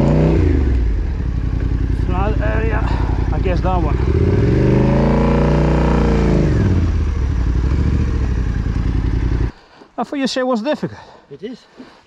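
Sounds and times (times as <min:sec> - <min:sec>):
motorcycle engine revving: 0:00.0 - 0:09.6.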